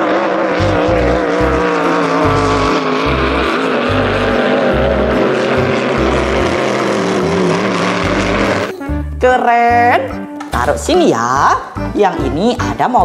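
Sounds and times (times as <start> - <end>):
speedboat engine running: 0.0 - 8.7
music with low beat: 0.6 - 11.0.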